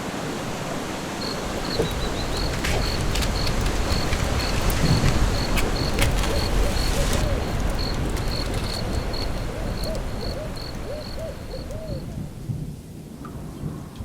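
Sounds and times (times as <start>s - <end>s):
low swooping calls: 1.3s - 12.4s.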